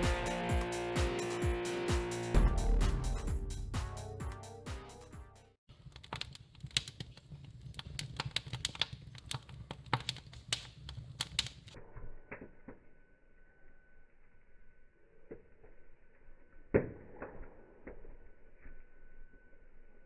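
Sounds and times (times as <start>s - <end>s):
low rumble: 2.3s - 3.8s
wood fire crackling and popping: 5.7s - 12.5s.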